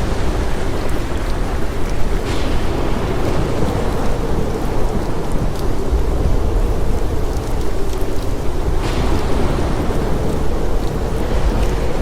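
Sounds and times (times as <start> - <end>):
ocean surf rumble: 0.0 - 12.0.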